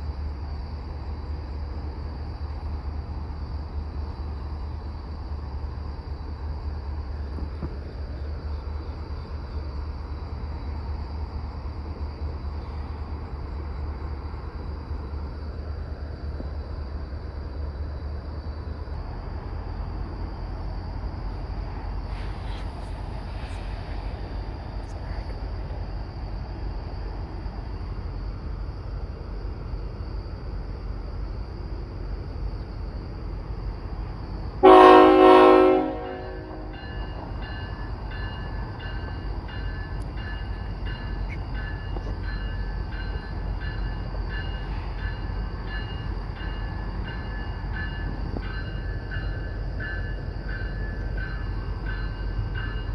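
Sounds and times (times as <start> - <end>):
diesel locomotive rumble: 0.0 - 52.9
train horn blast: 34.6 - 36.8.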